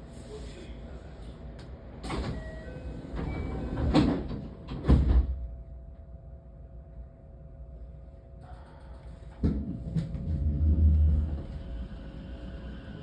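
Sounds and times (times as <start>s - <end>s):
train low hum: 0.0s - 13.0s
train doors sliding shut: 2.0s - 5.4s.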